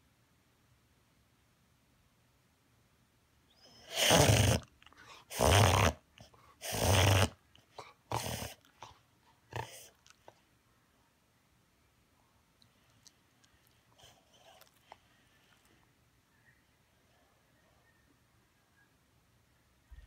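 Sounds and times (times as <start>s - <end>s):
dog harsh nasal breathing: 3.8s - 10.0s.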